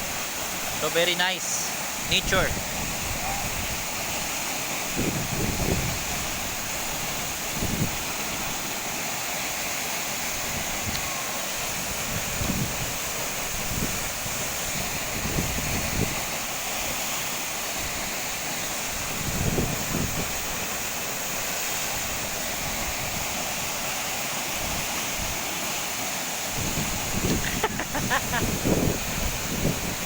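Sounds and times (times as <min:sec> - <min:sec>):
waterfall rushing: 0:00.0 - 0:30.0
wind buffeting microphone: 0:04.9 - 0:08.1, 0:11.8 - 0:16.4, 0:18.9 - 0:20.5, 0:26.5 - 0:30.0.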